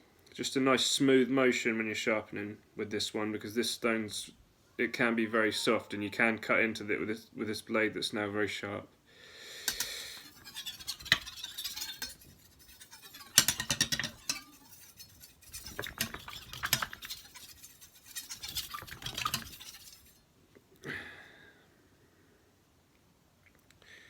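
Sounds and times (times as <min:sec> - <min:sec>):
knife scraping on whetstone: 0:09.7 - 0:20.2.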